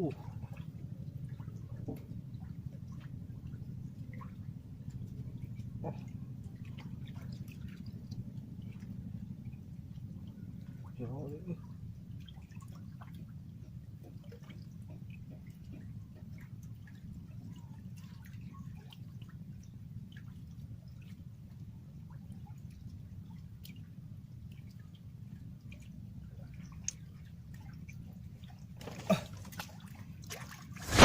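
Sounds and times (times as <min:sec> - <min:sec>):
water drips: 0:24.5 - 0:28.6.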